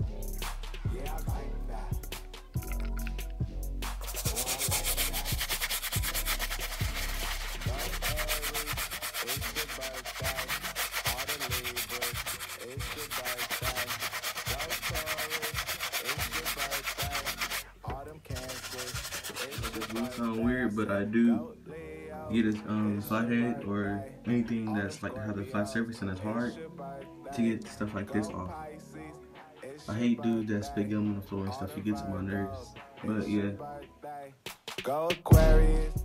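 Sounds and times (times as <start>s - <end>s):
scrubbing shoe sole: 4.0s - 20.4s.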